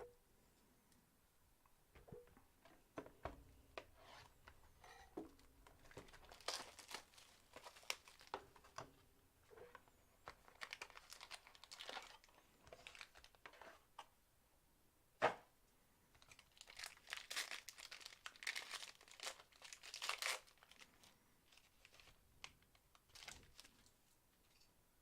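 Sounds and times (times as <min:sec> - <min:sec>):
packaging crinkling and tearing: 0:05.8 - 0:08.4, 0:10.3 - 0:13.4, 0:16.2 - 0:23.8.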